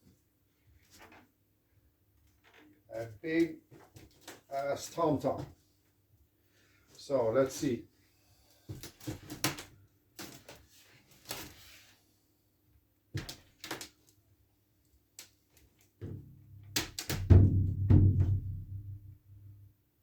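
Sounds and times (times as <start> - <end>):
gong drum booming: 17.3 - 19.1.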